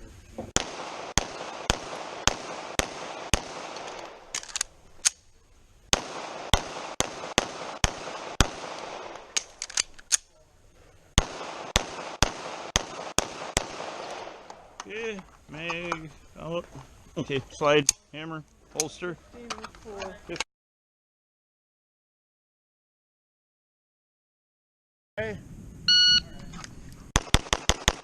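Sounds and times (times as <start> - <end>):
pistol shots: 0.6 - 4.5, 5.9 - 10.0, 11.2 - 14.6, 27.2 - 28.0.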